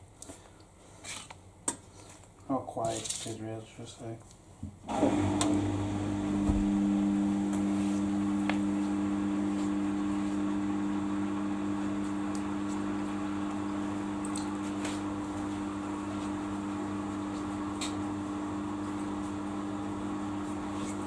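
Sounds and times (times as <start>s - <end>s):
washing machine motor hum: 4.9s - 21.0s.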